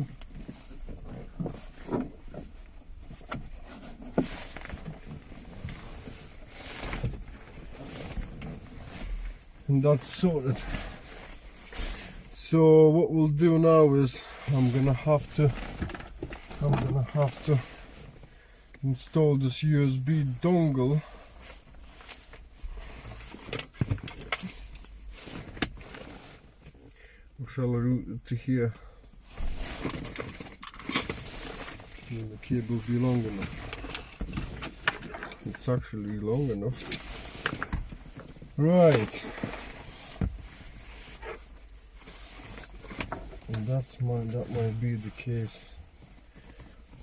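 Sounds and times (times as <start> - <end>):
rubbing sounds: 0.0 - 12.3, 31.0 - 47.0
rustling of handled cable: 0.0 - 27.4, 28.6 - 47.0.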